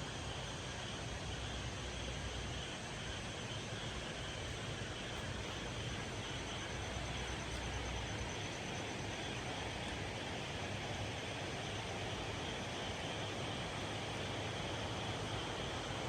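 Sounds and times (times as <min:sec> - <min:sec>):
faint high-pitched hum: 0:00.0 - 0:16.0.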